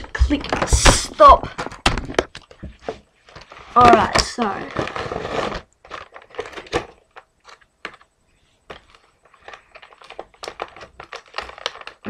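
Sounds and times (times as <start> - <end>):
plastic packaging clicking: 8.7 - 12.0.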